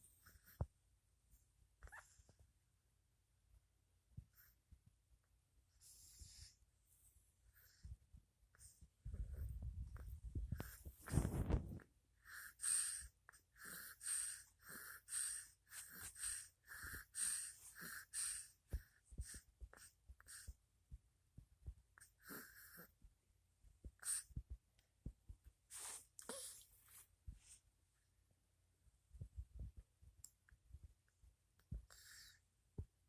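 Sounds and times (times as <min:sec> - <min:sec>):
faint wheezy snoring: 0:12.2 - 0:20.6, 0:22.0 - 0:22.9, 0:31.8 - 0:32.4.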